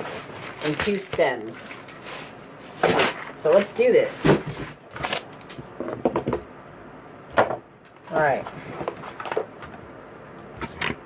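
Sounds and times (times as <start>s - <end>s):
packaging and gear clicking: 0.0s - 3.7s.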